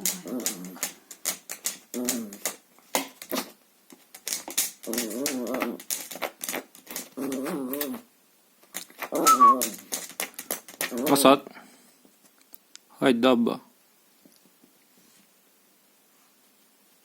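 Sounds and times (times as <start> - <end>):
small dog growling: 0.0 - 1.0, 1.9 - 2.5, 4.9 - 5.9, 7.1 - 8.1, 10.9 - 11.4.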